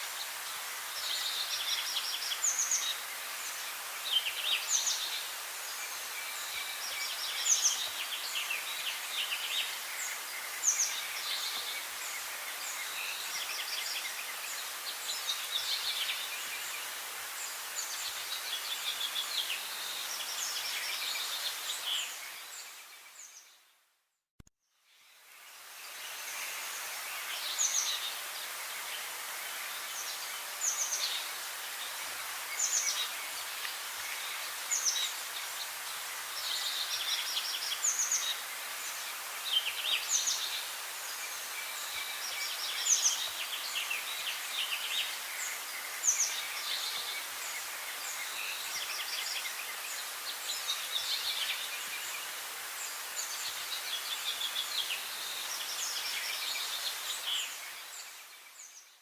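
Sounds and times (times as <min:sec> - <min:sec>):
steady background hiss: 0:00.0 - 0:23.5, 0:24.9 - 0:59.0
songbird singing: 0:00.0 - 0:23.7, 0:24.8 - 0:59.0.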